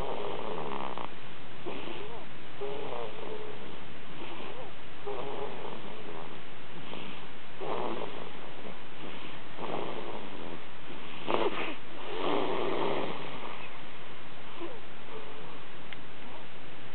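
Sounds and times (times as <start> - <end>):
baby snoring: 0.0 - 13.8, 14.6 - 15.6.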